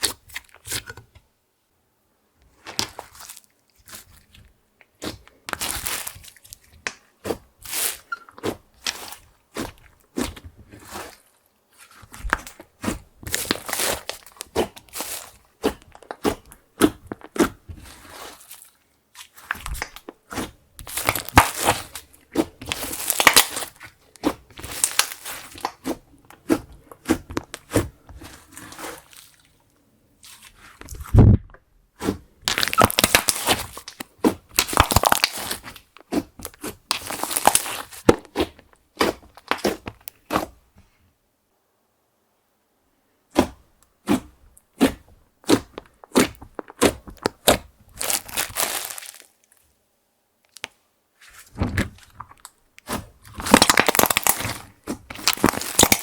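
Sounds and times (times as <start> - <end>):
slime crackling and popping: 2.6 - 29.6, 32.0 - 40.4, 44.8 - 49.6, 52.0 - 56.0
low thump: 51.6 - 52.0.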